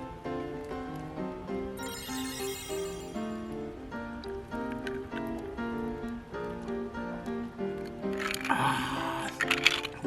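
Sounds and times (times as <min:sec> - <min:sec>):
light bell-like melody: 0:01.8 - 0:04.1.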